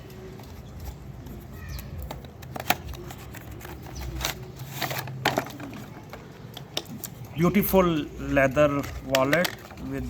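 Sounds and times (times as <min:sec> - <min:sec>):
packaging rustling: 0:00.0 - 0:06.5.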